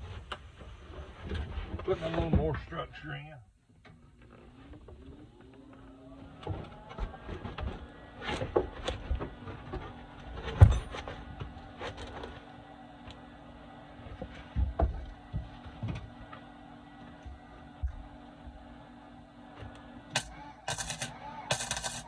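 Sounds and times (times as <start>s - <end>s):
steady low hum: 12.6s - 22.0s
steel parts knocking and clanking: 20.2s - 22.0s.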